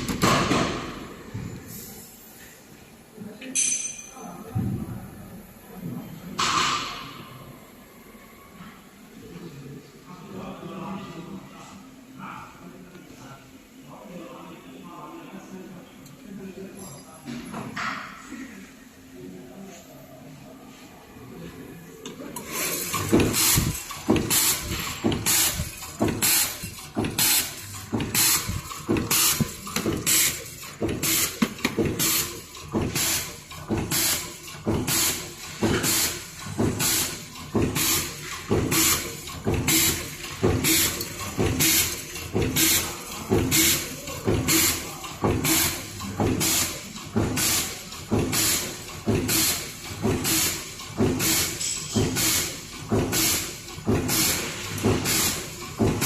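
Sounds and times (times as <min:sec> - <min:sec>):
machine hissing: 0:22.3 - 0:56.0
machine clatter: 0:22.4 - 0:56.0.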